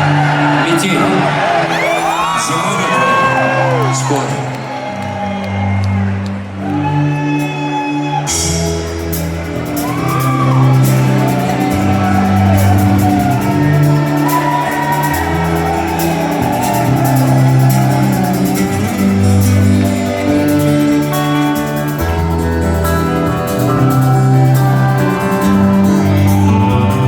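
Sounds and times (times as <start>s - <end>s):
audience shouting and whooping: 0.0s - 27.0s
live rock band playing: 4.6s - 27.0s
held bass notes: 8.2s - 27.0s.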